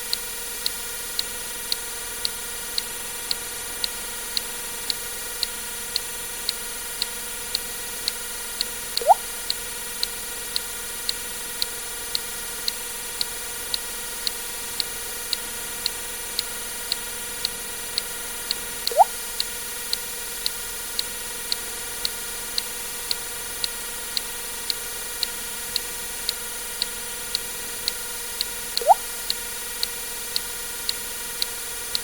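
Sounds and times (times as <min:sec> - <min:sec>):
water drop plink: 0:09.0 - 0:09.3, 0:18.9 - 0:19.1, 0:28.8 - 0:29.1
repeating short tick: 0:09.0 - 0:09.5, 0:18.9 - 0:19.1, 0:28.8 - 0:29.3.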